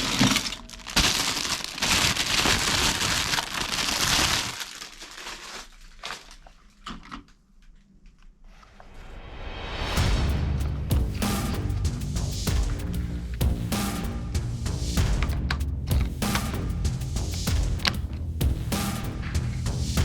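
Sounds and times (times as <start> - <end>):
crinkling and crackling: 0.0 - 8.7.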